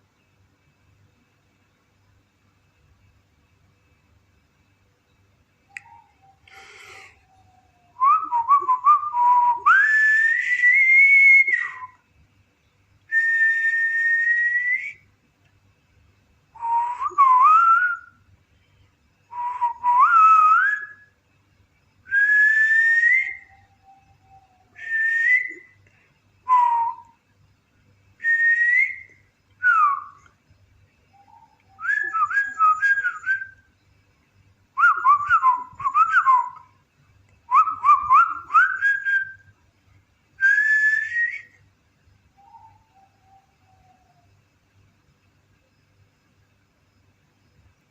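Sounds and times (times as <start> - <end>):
bird singing whistled phrases: 5.7 - 12.0, 13.1 - 15.0, 16.6 - 18.2, 19.3 - 21.1, 22.1 - 25.8, 26.5 - 27.2, 28.2 - 30.3, 31.1 - 33.7, 34.8 - 36.7, 37.5 - 39.5, 40.4 - 41.6, 42.4 - 44.3.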